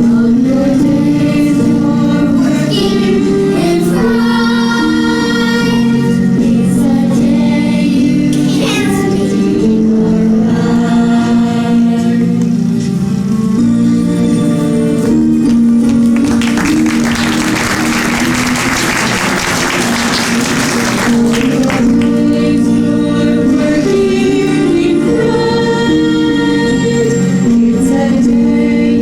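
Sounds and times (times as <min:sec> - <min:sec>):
voices singing sustained notes: 0:00.0 - 0:15.3, 0:16.4 - 0:29.0
applause: 0:15.5 - 0:22.3.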